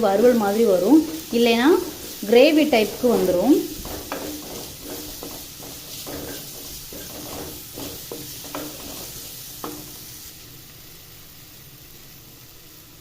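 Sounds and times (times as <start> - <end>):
spatula scraping a pan: 0.0 - 10.3
vegetables sizzling in oil: 0.0 - 13.0.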